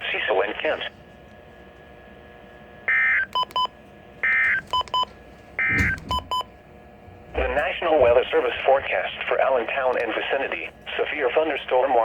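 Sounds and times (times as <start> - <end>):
short beeps: 4.3 - 6.5.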